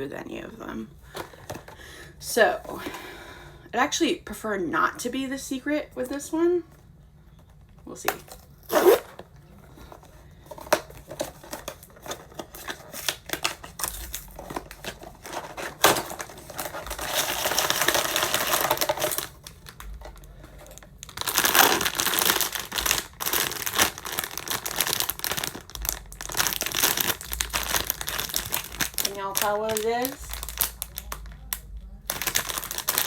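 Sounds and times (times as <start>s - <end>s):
packaging crackling and rustling: 7.4s - 33.0s
packaging crinkling: 8.2s - 33.0s.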